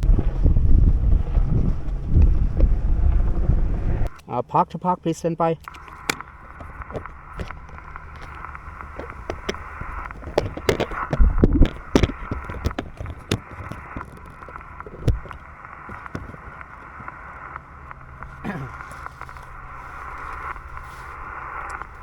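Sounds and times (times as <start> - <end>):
low thumps: 0.0 - 4.1, 6.0 - 17.2
static crackles: 0.0 - 22.0
radio static hiss: 3.0 - 22.0.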